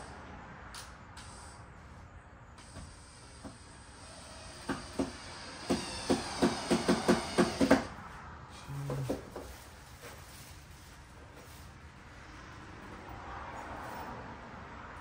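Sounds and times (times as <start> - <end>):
power drill whirring: 2.6 - 7.9.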